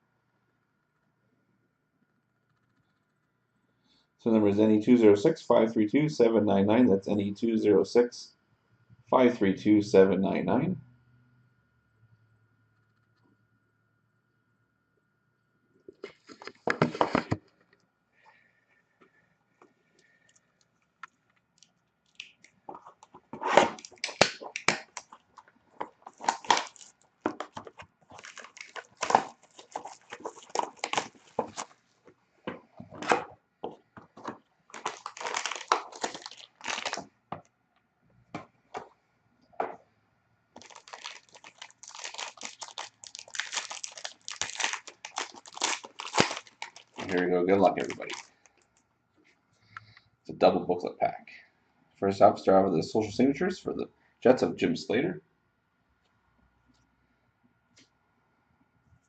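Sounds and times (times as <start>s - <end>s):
packaging crinkling and tearing: 21.2s - 31.8s, 32.5s - 37.1s, 40.6s - 48.8s.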